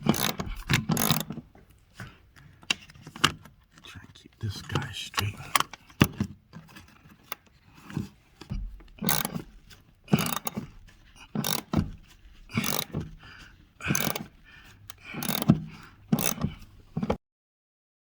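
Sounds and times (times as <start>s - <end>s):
socket ratchet clicking: 0.0s - 1.5s, 8.8s - 13.2s, 13.8s - 17.2s.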